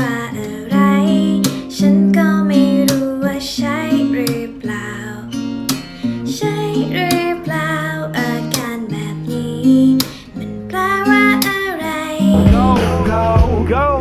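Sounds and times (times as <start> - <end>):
strummed acoustic guitar: 0.0 - 13.9
person singing: 12.2 - 14.0.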